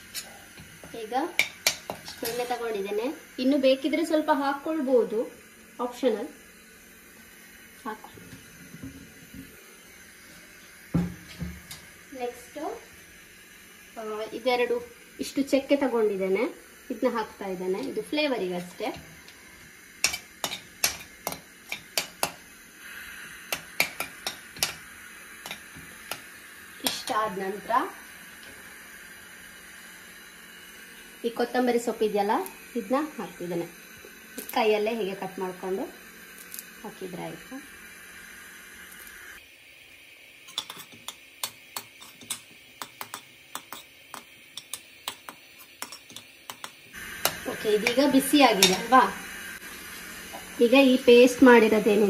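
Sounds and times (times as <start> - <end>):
soft sizzle: 0.0 - 52.0
butter popping in a hot pan: 17.8 - 22.6, 23.4 - 27.4, 34.0 - 34.7, 40.4 - 49.0
sharp pops and clicks: 40.5 - 48.0.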